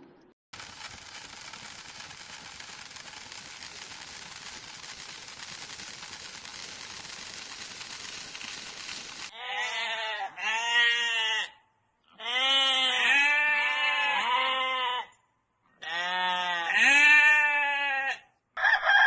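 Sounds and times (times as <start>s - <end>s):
animal bleating: 9.3s - 15.2s, 15.8s - 18.3s.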